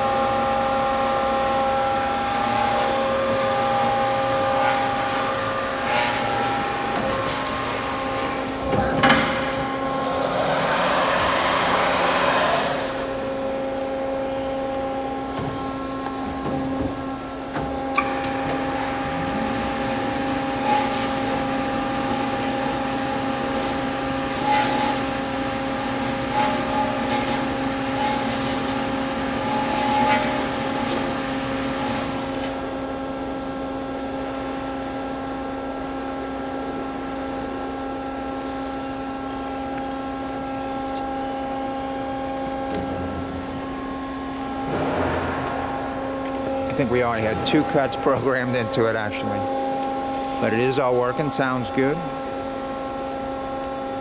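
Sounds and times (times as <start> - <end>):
high thin whine: 0.0 - 8.6, 18.4 - 32.3
band saw machine hum: 0.0 - 33.2, 40.6 - 54.0.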